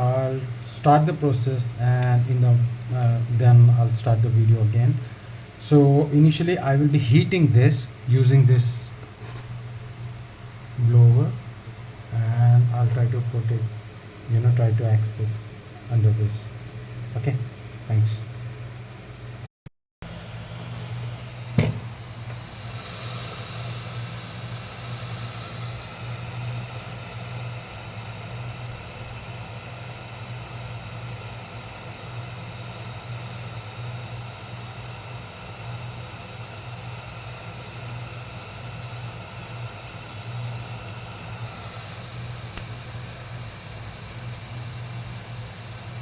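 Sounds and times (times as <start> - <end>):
hot air blower humming and whining: 0.0 - 19.4, 20.0 - 46.0
sharp click: 42.5 - 42.8.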